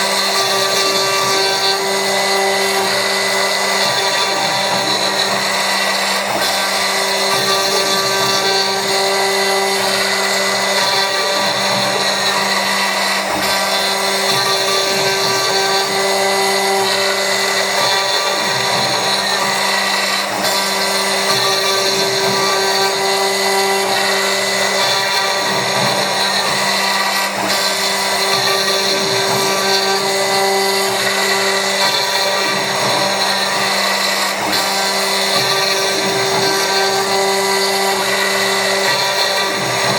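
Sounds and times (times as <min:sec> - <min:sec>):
cutting noise: 0:00.0 - 0:39.9
milling machine motor whine: 0:00.0 - 0:39.9.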